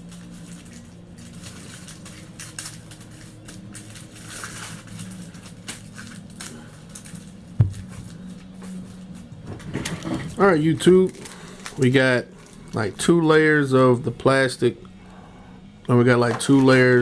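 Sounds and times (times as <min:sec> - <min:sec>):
foil and tape crinkling: 0:00.0 - 0:15.1, 0:16.0 - 0:17.0
low hum: 0:06.9 - 0:10.4
sharp knock: 0:07.6 - 0:08.1.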